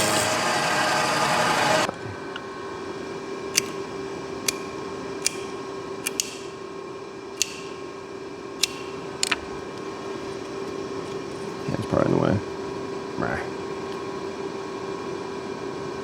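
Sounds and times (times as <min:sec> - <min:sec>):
milling machine humming: 0:00.0 - 0:06.5
sharp light clicks: 0:03.6 - 0:06.6, 0:07.4 - 0:08.0, 0:08.6 - 0:09.5.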